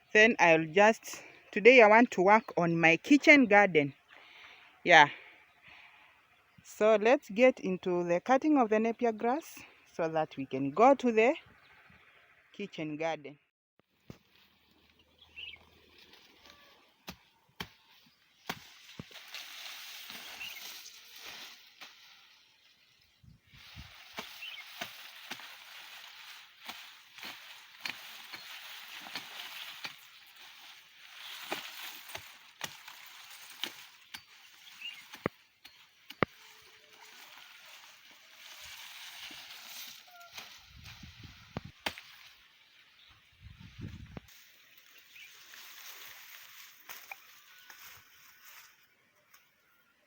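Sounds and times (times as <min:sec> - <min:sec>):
stalks and leaves rustling: 0:13.8 - 0:49.9
grass chopping strokes: 0:17.0 - 0:22.6, 0:23.6 - 0:42.4.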